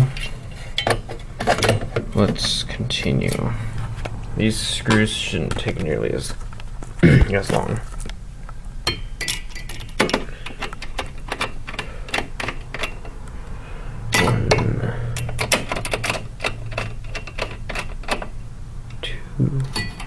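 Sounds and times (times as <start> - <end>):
low hum: 12.8 - 20.0.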